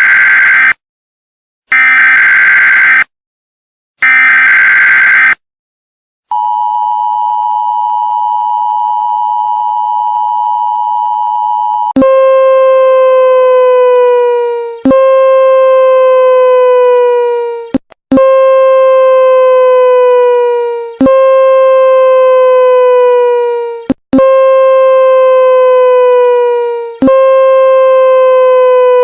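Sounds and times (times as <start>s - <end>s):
low buzzy tone sliding down: 12.0s - 29.0s.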